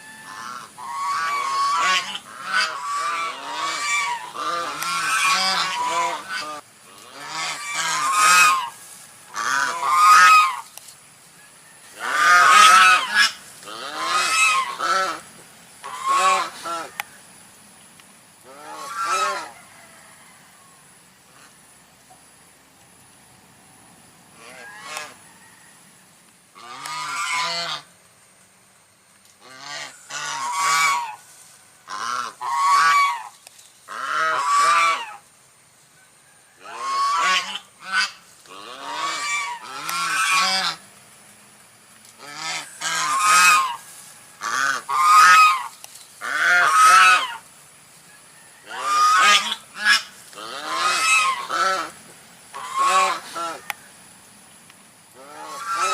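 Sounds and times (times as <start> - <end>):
goose honking: 0.0 - 10.7, 11.9 - 17.0, 18.4 - 19.6, 24.4 - 25.2, 26.6 - 27.9, 29.4 - 31.3, 31.9 - 35.2, 36.6 - 40.8, 42.2 - 47.4, 48.6 - 53.8, 55.2 - 55.9.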